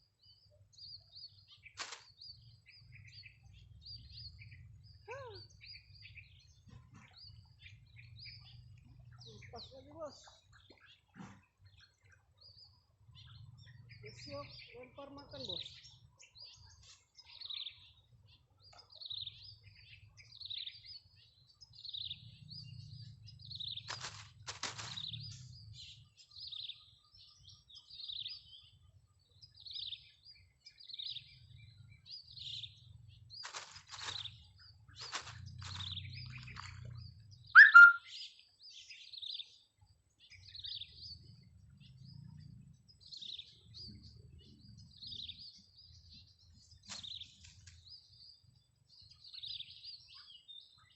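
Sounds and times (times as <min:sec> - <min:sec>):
bird chirping: 0:00.0 - 0:50.9
loud squeak falling in pitch: 0:37.6 - 0:38.0.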